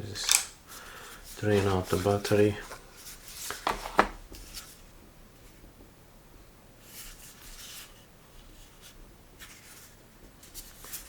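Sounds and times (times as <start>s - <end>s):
sharp plastic clicks: 0.2s - 0.6s
soft rustle: 0.7s - 5.8s, 6.8s - 11.0s.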